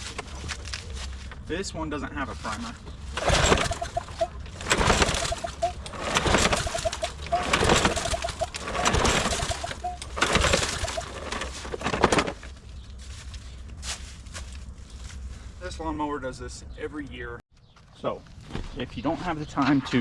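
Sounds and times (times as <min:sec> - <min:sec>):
lawn mower engine cranking: 0:02.9 - 0:12.6
recoil starter pulled: 0:03.1 - 0:12.6.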